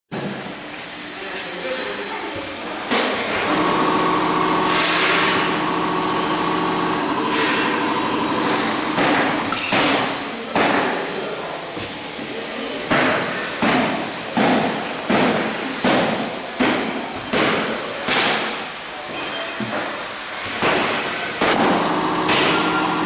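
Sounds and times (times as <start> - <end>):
machine motor hum: 3.3 - 9.5, 21.4 - 23.0.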